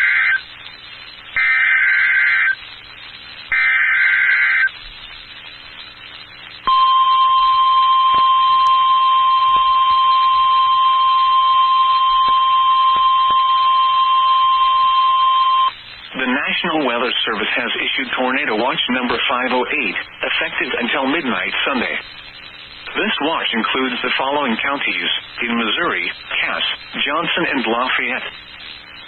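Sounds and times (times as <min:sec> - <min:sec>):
warbling digital data bursts: 0:00.0 - 0:29.0
loud steady high beep: 0:06.6 - 0:15.8.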